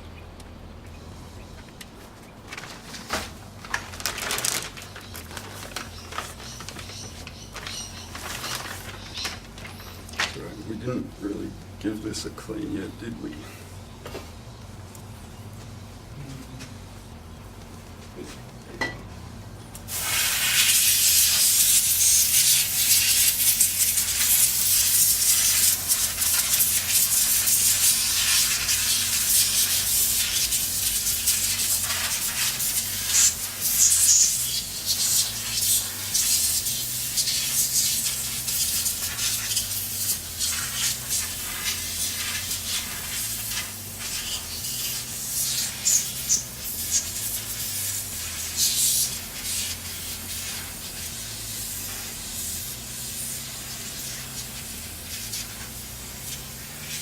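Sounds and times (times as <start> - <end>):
compressed air hissing: 19.8 - 57.0.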